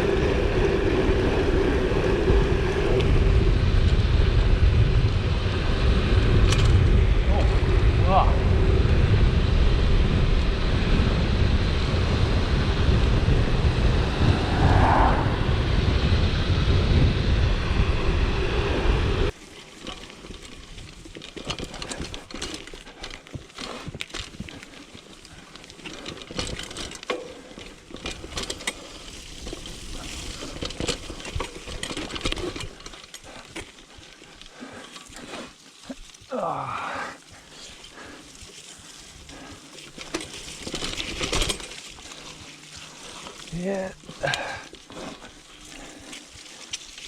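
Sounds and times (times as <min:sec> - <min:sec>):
wind buffeting microphone: 0:00.0 - 0:19.4
bike tyre noise: 0:00.0 - 0:47.0
bike clicks and knocks: 0:06.1 - 0:07.6, 0:19.3 - 0:36.3, 0:37.2 - 0:47.0.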